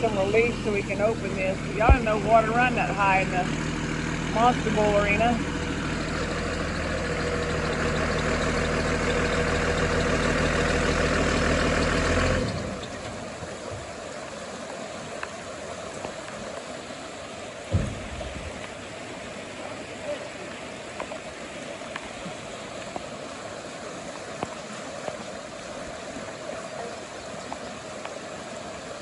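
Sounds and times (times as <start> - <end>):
pickup truck engine running: 0.0 - 16.2
rushing floodwater: 0.0 - 29.0
low thump: 1.8 - 2.3, 17.7 - 18.8.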